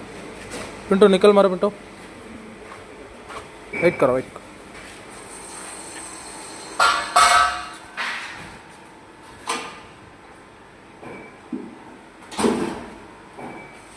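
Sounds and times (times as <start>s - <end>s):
metal clanks of wet grinder: 5.3s - 8.4s.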